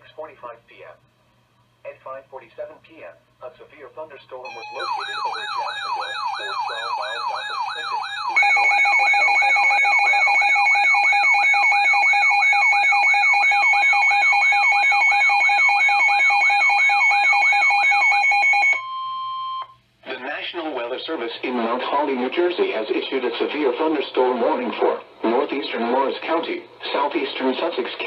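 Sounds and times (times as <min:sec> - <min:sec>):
warbling siren: 0:04.5 - 0:18.8.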